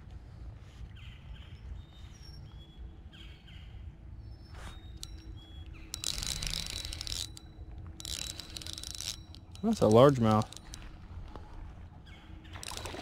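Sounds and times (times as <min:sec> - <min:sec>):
fishing reel whirring: 0:04.9 - 0:11.4, 0:12.6 - 0:13.0.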